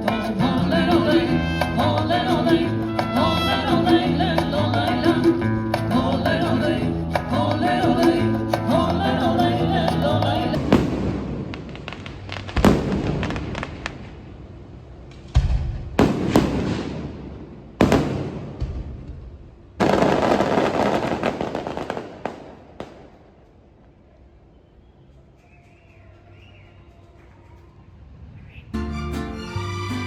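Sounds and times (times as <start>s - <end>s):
fireworks crackling: 10.5s - 24.0s
fireworks booming: 10.6s - 23.4s.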